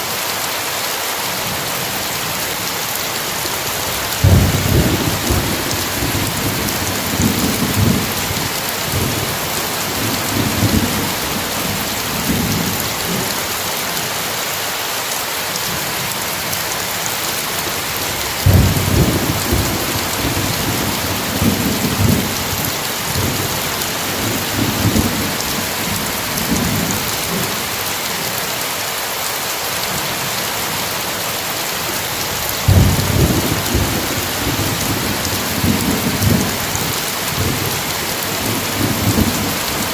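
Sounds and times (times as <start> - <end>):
heavy rain: 0.0 - 39.9
thunder rumbling: 3.9 - 13.2, 18.2 - 27.4, 32.7 - 39.9.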